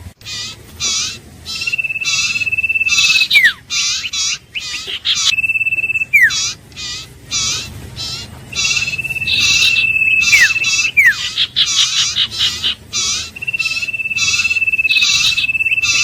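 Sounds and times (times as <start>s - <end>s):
bird raspy chirps: 0.0s - 16.0s
bird high whistle: 0.8s - 16.0s.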